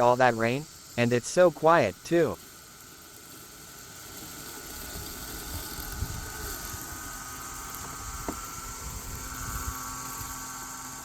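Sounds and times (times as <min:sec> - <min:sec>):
constant hiss: 0:00.0 - 0:11.0
electric motor whine: 0:00.0 - 0:11.0.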